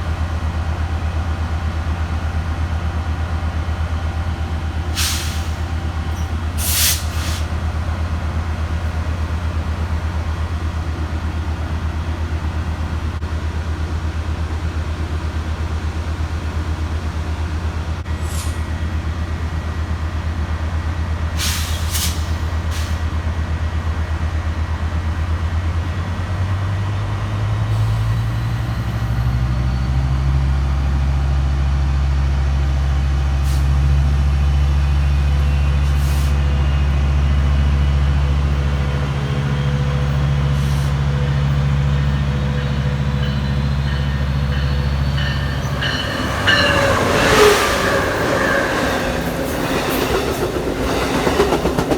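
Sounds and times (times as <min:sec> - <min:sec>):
diesel locomotive engine: 0:00.0 - 0:51.9
brake air hisses: 0:05.0 - 0:05.7, 0:06.6 - 0:07.5.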